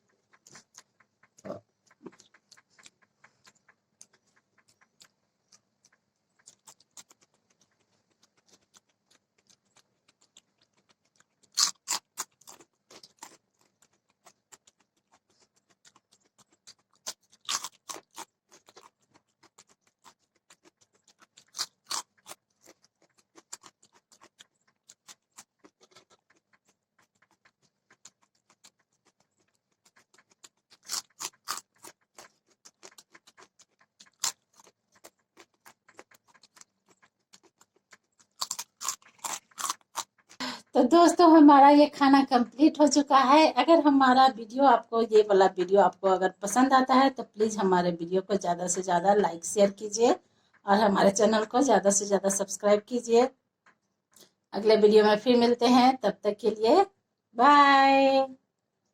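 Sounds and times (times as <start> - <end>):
mouth clicks: 0.0 - 13.4
chewing and crunching food: 0.0 - 41.5, 42.8 - 58.9.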